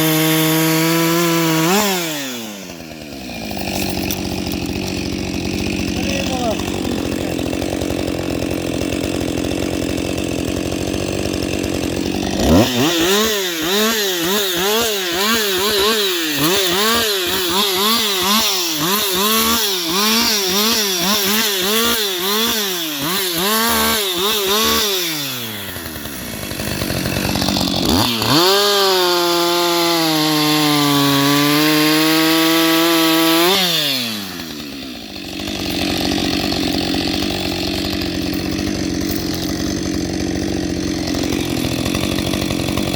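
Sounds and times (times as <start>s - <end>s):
chainsaw revving: 0.0s - 42.9s.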